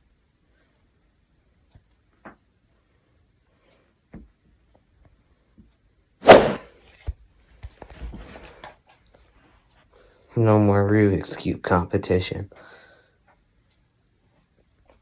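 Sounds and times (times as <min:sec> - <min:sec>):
loud bang with ringing: 0:06.3 - 0:06.6.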